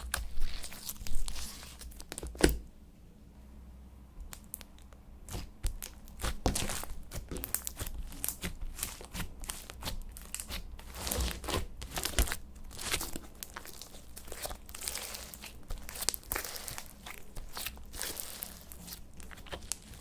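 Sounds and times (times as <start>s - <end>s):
slime kneaded by hand: 0.0s - 2.6s, 5.2s - 20.0s
slime crackling and popping: 4.2s - 20.0s.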